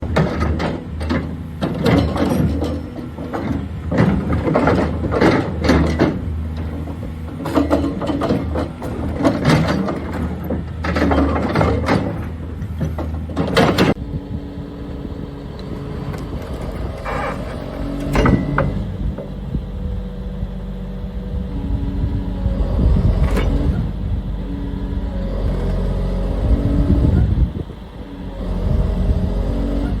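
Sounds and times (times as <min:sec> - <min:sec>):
metallic clanks and rattles: 0:00.0 - 0:14.0, 0:16.1 - 0:19.4
excavator engine drone: 0:00.0 - 0:30.0.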